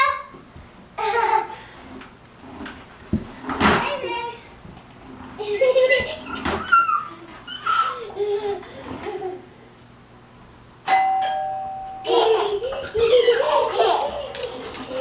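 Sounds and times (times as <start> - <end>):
young child laughing and babbling: 1.0 - 1.6, 5.4 - 9.5
two-tone doorbell chime: 10.9 - 12.5.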